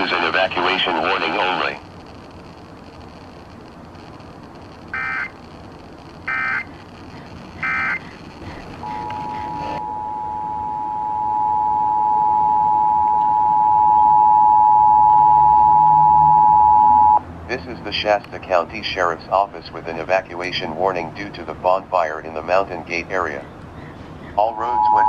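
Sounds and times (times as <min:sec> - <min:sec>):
two-tone attention signal: 0:08.8 - 0:17.2, 0:24.5 - 0:25.0
data screech bursts: 0:24.4 - 0:25.0.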